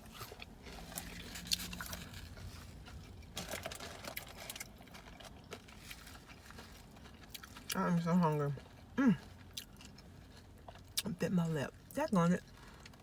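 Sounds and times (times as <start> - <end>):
chewing and biting into sandwich: 0.0 - 11.2.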